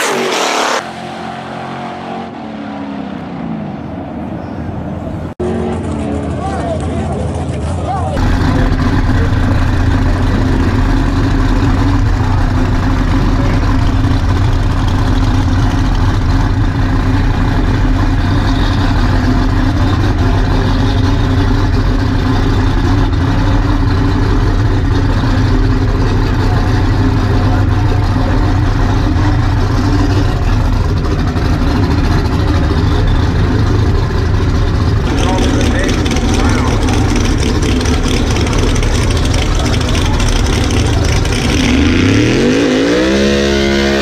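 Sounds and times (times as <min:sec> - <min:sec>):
race car engine idling: 0:04.5 - 0:42.3.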